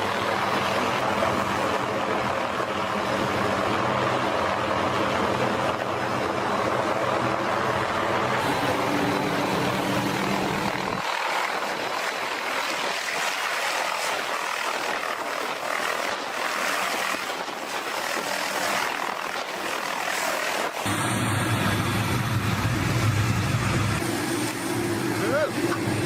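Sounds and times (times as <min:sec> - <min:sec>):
helicopter rushing noise: 0:00.0 - 0:26.0
low engine hum: 0:20.9 - 0:26.0.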